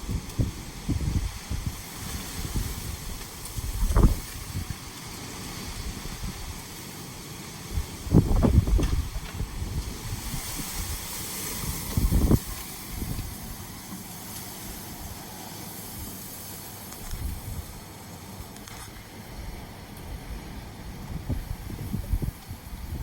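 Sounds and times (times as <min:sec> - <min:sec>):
wind buffeting microphone: 0:00.0 - 0:06.6, 0:07.6 - 0:13.8, 0:17.0 - 0:18.0, 0:18.7 - 0:23.0
heavy rain hissing: 0:00.0 - 0:23.0.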